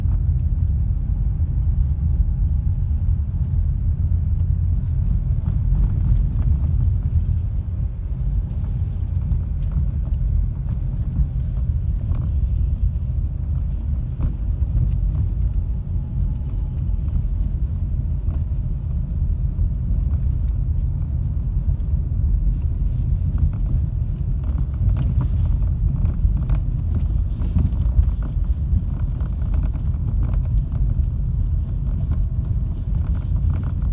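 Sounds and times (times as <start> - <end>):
car road and drivetrain rumble: 0.0 - 33.9.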